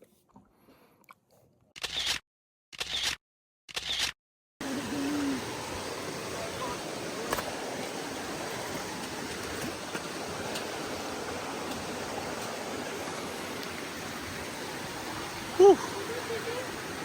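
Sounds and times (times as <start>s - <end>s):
running water rushing: 4.6s - 17.0s.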